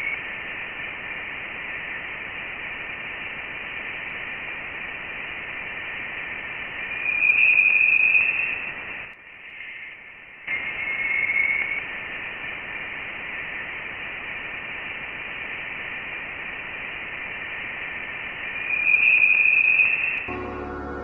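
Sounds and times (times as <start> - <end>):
static hiss: 0.0 - 21.0
faint high whistling tone: 6.9 - 8.7, 9.5 - 11.9, 18.6 - 21.0.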